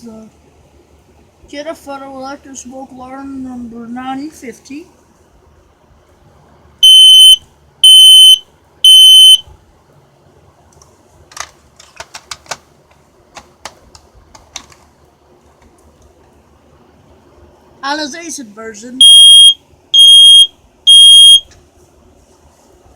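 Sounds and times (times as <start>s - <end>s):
smoke alarm beeps: 6.8s - 9.4s, 19.0s - 21.5s.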